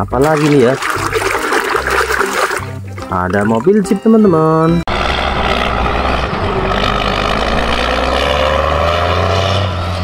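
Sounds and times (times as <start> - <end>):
steady low drone: 4.9 - 8.2
engine revving up: 4.9 - 10.0.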